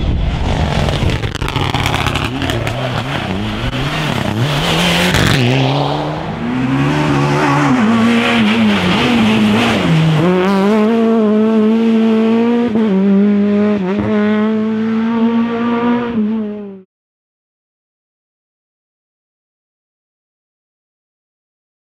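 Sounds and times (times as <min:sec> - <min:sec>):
rally car engine high revs: 0:00.6 - 0:16.8.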